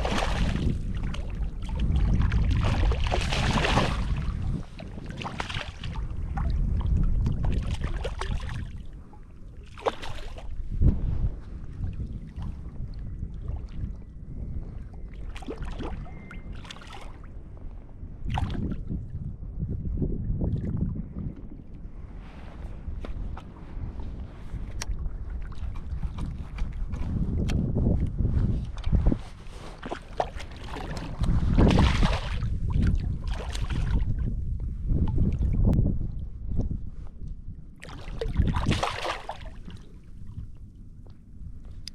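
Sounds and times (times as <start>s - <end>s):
shallow water splashing: 0.0s - 12.8s, 15.2s - 17.3s, 28.6s - 34.2s, 37.8s - 40.6s
wind buffeting microphone: 0.0s - 41.9s.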